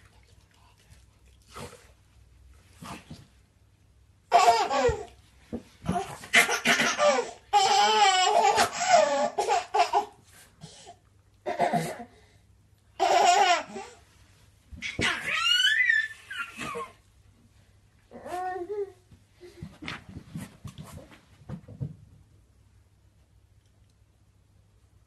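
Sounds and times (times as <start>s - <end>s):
baby laughing: 4.3s - 5.2s, 5.9s - 10.2s, 13.0s - 14.0s.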